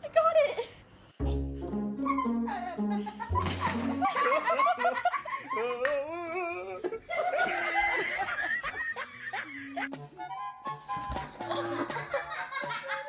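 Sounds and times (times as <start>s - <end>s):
people laughing: 2.0s - 9.9s, 11.4s - 13.0s.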